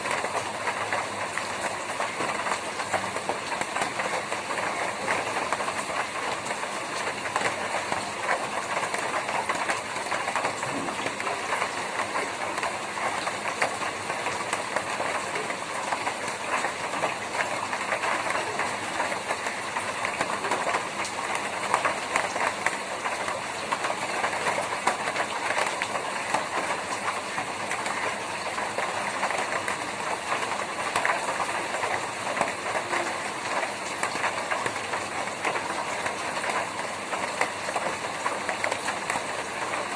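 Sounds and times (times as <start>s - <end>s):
rain on a tin roof: 0.0s - 39.9s.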